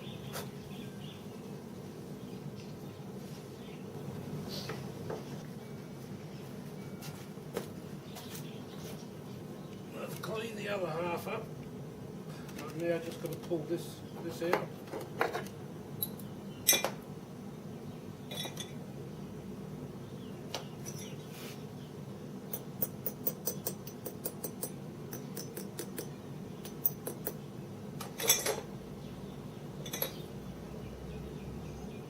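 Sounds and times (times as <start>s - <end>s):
metal tools clinking: 18.3s - 18.8s, 28.2s - 28.7s, 29.8s - 30.2s.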